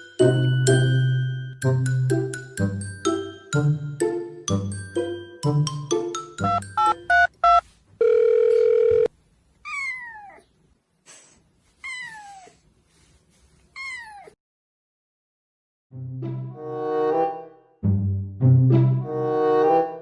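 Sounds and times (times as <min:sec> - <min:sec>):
kitten meowing: 0:09.6 - 0:10.5, 0:11.8 - 0:12.6, 0:13.8 - 0:14.4.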